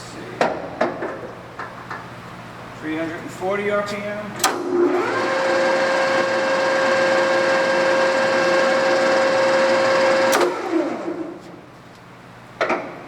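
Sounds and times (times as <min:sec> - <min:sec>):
lathe spindle gear whine: 0:04.7 - 0:11.4.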